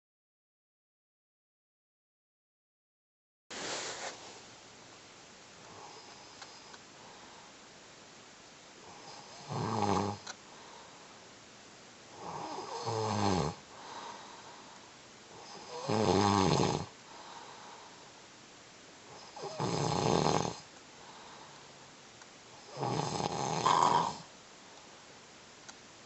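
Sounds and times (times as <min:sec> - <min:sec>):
faint breathing: 0:05.6 - 0:07.7, 0:10.2 - 0:11.3, 0:13.6 - 0:15.8, 0:17.0 - 0:18.3, 0:20.6 - 0:22.8
man snoring loudly: 0:09.1 - 0:10.2, 0:12.2 - 0:13.6, 0:15.4 - 0:16.9, 0:19.4 - 0:20.6, 0:22.7 - 0:24.3.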